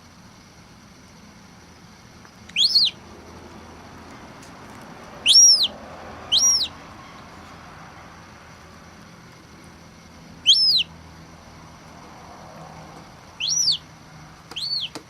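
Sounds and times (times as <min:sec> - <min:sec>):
gull chick peeping: 0:02.5 - 0:03.0, 0:05.2 - 0:07.2, 0:10.4 - 0:10.9, 0:13.4 - 0:13.9, 0:14.5 - 0:15.0.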